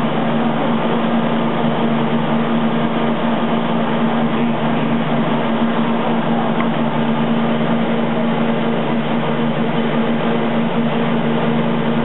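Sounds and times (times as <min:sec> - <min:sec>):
machine humming: 0:00.0 - 0:12.0.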